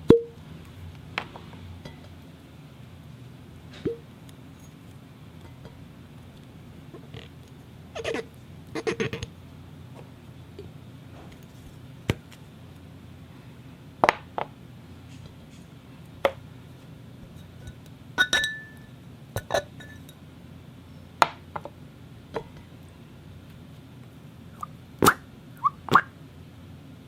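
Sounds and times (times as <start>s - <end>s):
crystal glass clinking: 18.2s - 18.9s.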